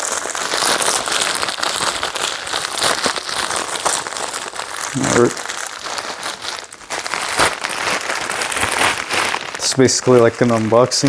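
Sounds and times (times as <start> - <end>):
packaging bag crinkling: 0.0 - 11.0.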